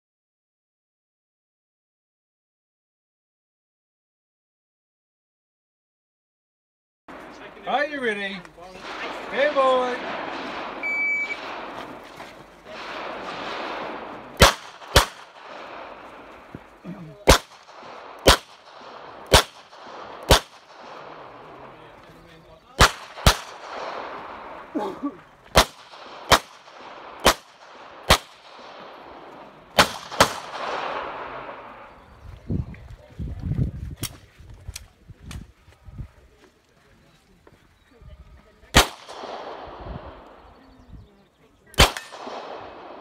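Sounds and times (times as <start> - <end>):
pistol shots: 8.8 - 16.5, 17.2 - 21.8, 22.8 - 24.7, 25.5 - 31.9, 38.7 - 39.8, 41.7 - 43.0
shot timer beep: 10.8 - 11.4.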